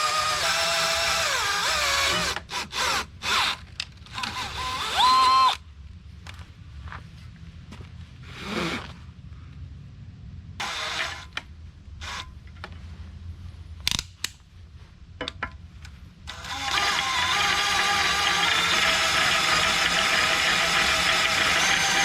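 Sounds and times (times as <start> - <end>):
electric drill drilling steel: 0.0 - 5.6, 10.6 - 11.3, 16.3 - 22.0.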